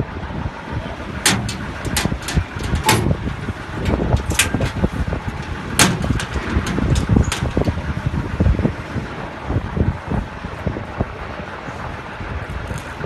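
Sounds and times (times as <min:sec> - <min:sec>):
vehicle engine rumbling: 0:00.0 - 0:13.0
sharp knocks: 0:01.2 - 0:03.2, 0:03.9 - 0:07.8.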